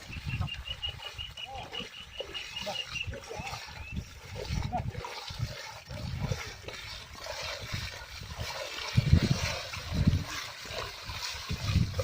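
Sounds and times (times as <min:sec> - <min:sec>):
muddy water splashing: 0:00.0 - 0:12.0.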